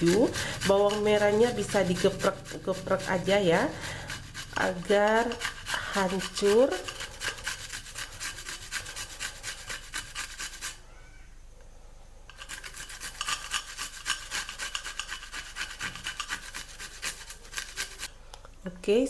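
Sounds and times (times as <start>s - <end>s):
grating on a cheese grater: 0.0s - 10.8s, 12.3s - 18.1s.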